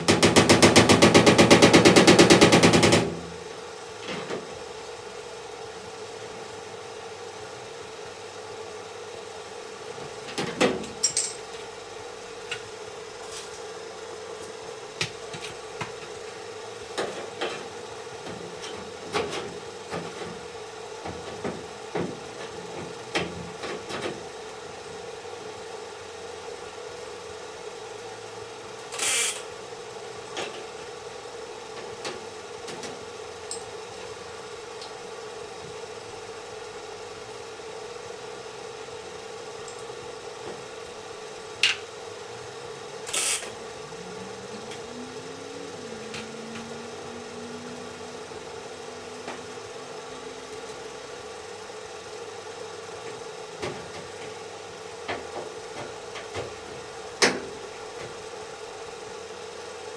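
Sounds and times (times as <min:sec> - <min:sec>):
steady hum: 0:40.2 - 0:59.3.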